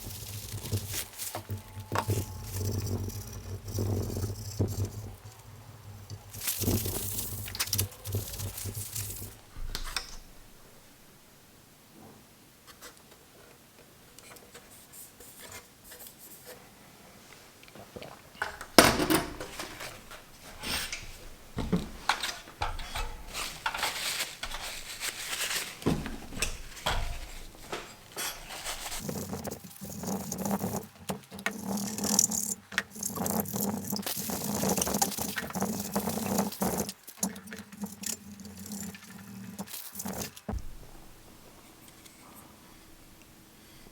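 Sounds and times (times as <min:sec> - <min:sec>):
metal parts clinking and scraping: 0:19.0 - 0:21.2, 0:26.4 - 0:29.0.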